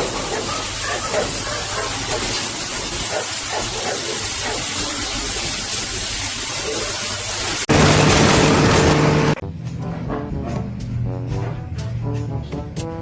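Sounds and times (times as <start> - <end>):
steady hissing: 0.0 - 9.4
loud rushing noise: 7.5 - 9.4
low hum: 7.7 - 9.4.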